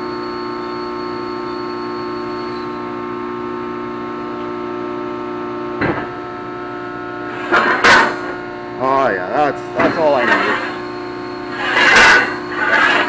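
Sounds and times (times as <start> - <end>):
shop machinery humming: 0.0 - 13.0
high whine: 6.7 - 13.0
sharp metallic sound: 9.8 - 13.0.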